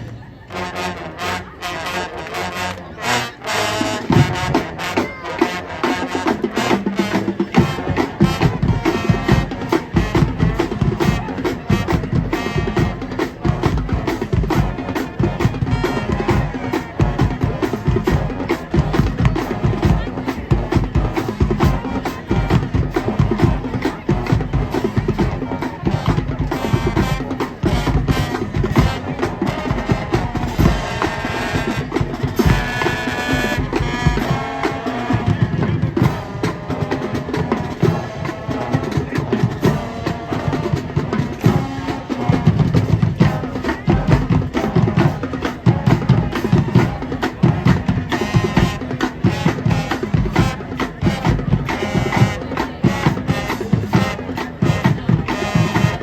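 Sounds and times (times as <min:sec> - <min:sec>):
fast drumline strokes: 0:00.0 - 0:56.0
marching band playing: 0:00.0 - 0:56.0
sustained brass chords: 0:00.4 - 0:45.3.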